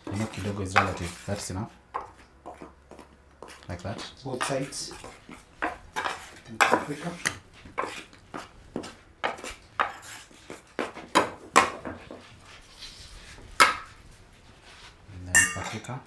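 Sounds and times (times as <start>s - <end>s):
utensils and dishes clinking: 0.0s - 2.7s, 3.4s - 8.2s, 15.3s - 16.0s.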